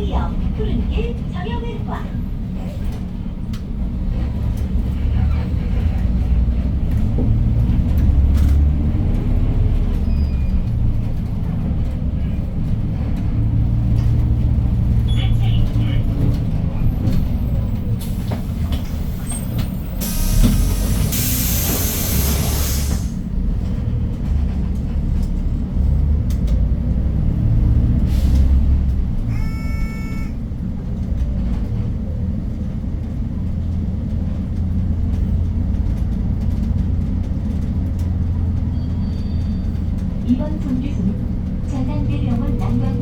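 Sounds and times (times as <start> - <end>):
bus engine drone: 0.0 - 43.0
compressed air hissing: 20.0 - 23.2
short electronic beep: 29.3 - 30.4.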